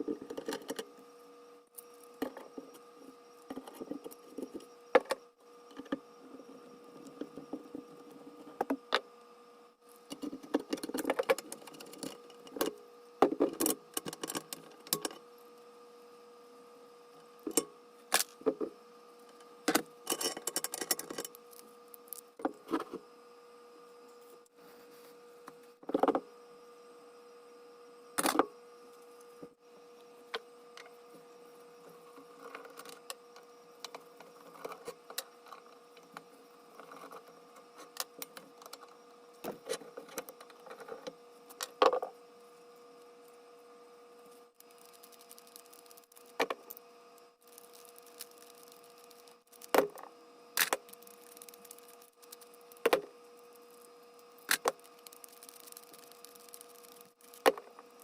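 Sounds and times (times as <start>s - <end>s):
steady hum: 0.0s - 58.0s
tools and metal parts clicking: 20.0s - 21.4s.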